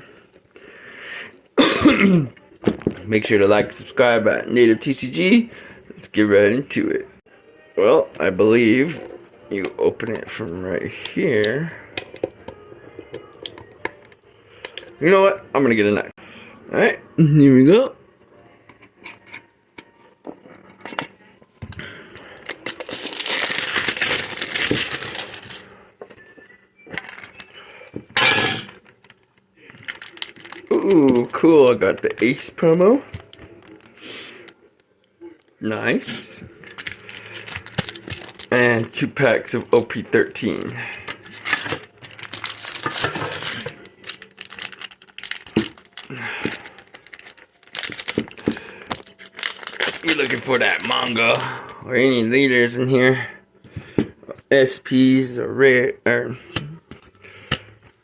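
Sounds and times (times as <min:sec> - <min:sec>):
plastic crinkling and tearing: 0:22.2 - 0:25.7, 0:26.9 - 0:27.6, 0:28.6 - 0:34.6, 0:36.6 - 0:51.5.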